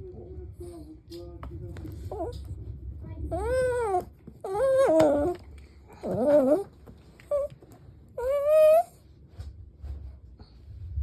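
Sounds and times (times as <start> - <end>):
dog whining: 2.1 - 2.4, 3.3 - 9.0
dog yelp: 3.4 - 5.4, 6.0 - 6.7, 7.3 - 7.5, 8.2 - 9.0.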